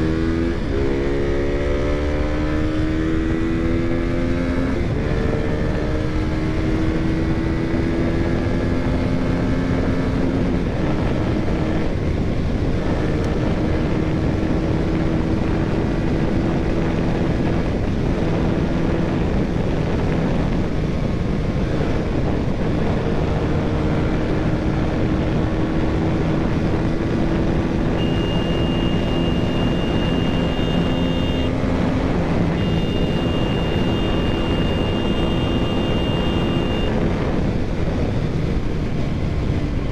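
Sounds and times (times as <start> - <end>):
wind rush on microphone: 0.0 - 39.9
motorcycle engine running: 8.2 - 39.9
high steady tone: 28.0 - 31.6, 32.5 - 37.0.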